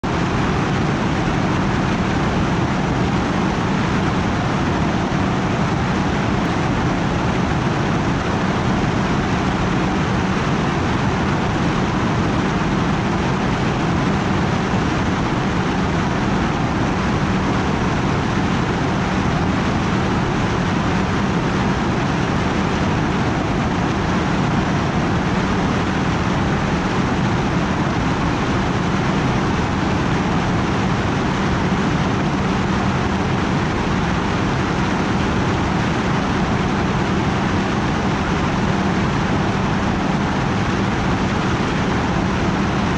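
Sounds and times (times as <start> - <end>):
aircraft propellers and motors: 0.0 - 42.9.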